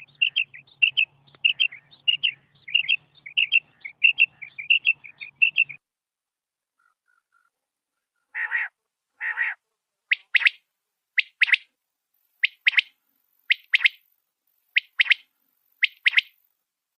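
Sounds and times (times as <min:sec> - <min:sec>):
quail calling: 0:00.0 - 0:05.8, 0:08.2 - 0:10.6, 0:11.2 - 0:11.7, 0:12.4 - 0:12.9, 0:13.5 - 0:14.0, 0:14.8 - 0:16.4.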